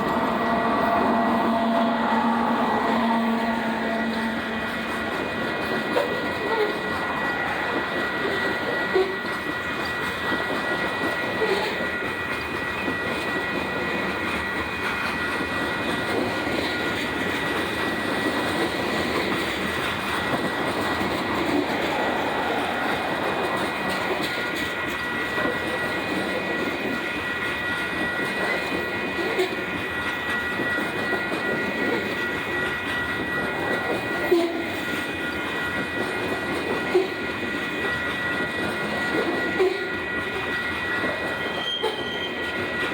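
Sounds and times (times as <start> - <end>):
freight train rumbling past: 0.0 - 42.9
steady high-pitched tone: 0.0 - 42.9
train wheel clacks: 0.0 - 42.9.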